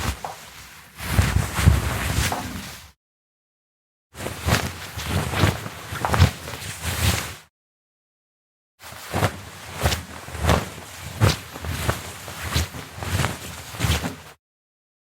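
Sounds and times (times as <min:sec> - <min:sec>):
cloth whooshing through air: 0:00.0 - 0:03.0.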